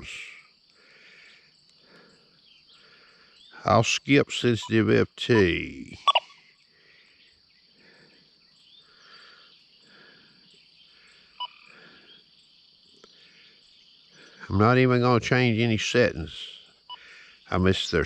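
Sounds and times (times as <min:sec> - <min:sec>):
metal detector beep: 0:04.6 - 0:06.3.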